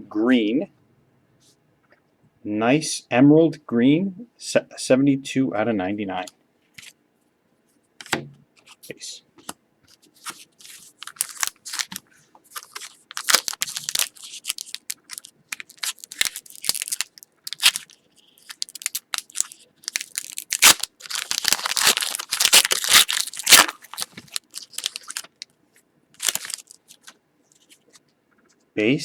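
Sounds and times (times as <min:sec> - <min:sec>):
plastic wrapper tearing and crinkling: 0:10.2 - 0:25.5, 0:26.2 - 0:27.2.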